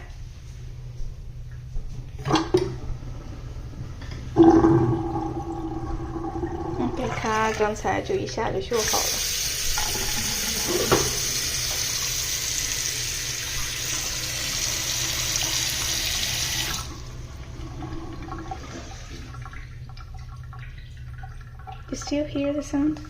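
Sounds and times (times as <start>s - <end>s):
water running from a faucet: 6.5s - 17.2s
water trickling down a drain: 16.6s - 23.0s.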